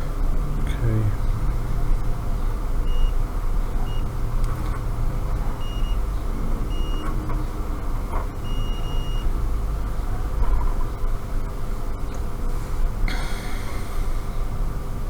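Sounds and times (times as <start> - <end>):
multimeter continuity beeps: 2.8 - 3.2, 5.6 - 6.0, 8.5 - 9.3
steady low hum: 11.9 - 15.0.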